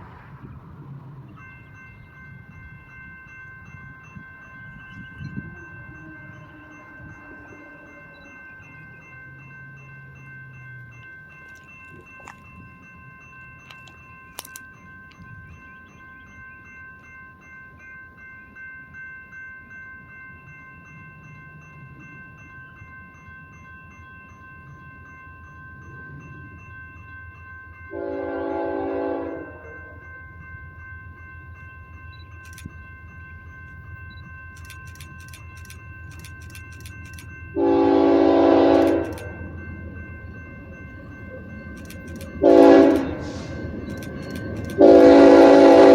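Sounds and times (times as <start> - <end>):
diesel train rumble: 0.0 - 16.3, 27.8 - 45.9
locomotive air horn blasts: 5.5 - 8.0, 27.9 - 29.9, 37.6 - 39.4, 42.4 - 43.7, 44.7 - 45.9.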